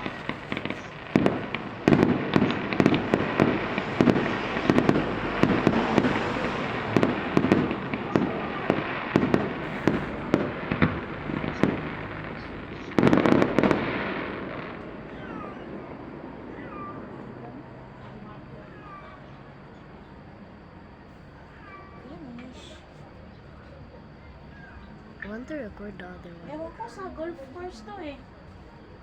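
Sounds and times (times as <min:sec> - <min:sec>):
fireworks bangs and crackles: 0:00.0 - 0:17.2.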